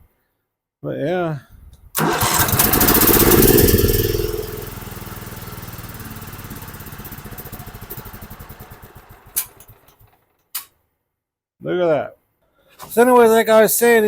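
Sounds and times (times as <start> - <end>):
mower engine running: 2.0 - 10.2
sharp click: 10.5 - 10.8.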